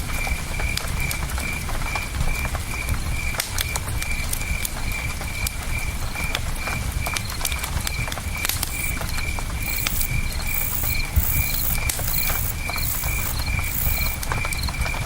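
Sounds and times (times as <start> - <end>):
campfire crackling and popping: 0.6 - 15.0
buzzing insect call: 8.6 - 14.2
crickets chirping: 8.6 - 15.0.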